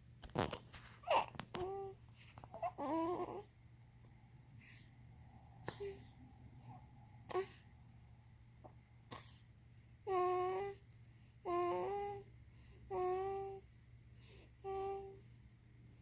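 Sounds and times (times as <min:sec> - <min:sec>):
child humming: 0:11.5 - 0:12.2, 0:12.9 - 0:13.6.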